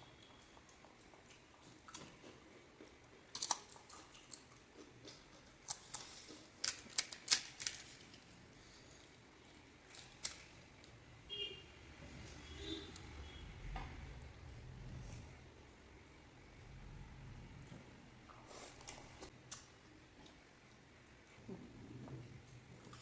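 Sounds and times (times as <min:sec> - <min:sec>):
crisp fried shells cracking: 0:03.3 - 0:08.3.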